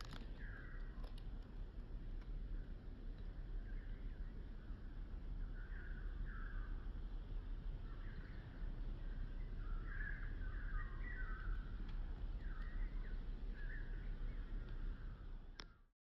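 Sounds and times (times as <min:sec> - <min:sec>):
steady low rumble: 0:00.0 - 0:15.8
birds calling: 0:07.8 - 0:15.8.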